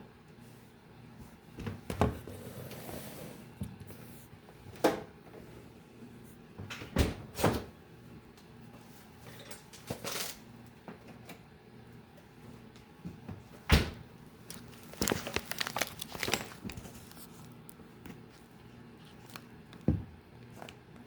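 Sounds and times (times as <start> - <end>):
bag rustling: 14.4 - 19.5.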